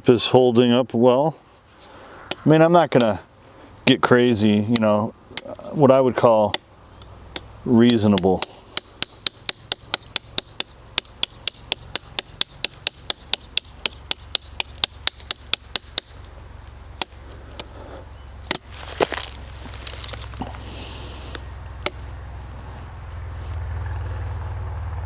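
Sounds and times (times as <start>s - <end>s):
rustle: 0.2s - 9.5s, 14.0s - 25.0s
knife striking wood: 7.4s - 16.2s, 18.5s - 19.8s, 21.8s - 22.1s.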